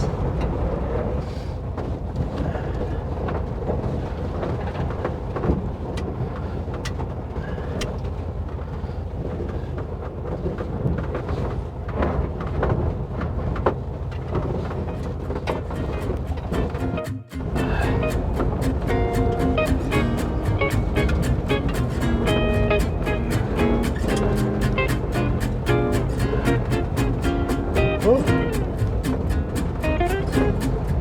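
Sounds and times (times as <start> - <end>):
body knocks and rattles: 3.2 - 16.5
low engine rumble: 13.8 - 31.0.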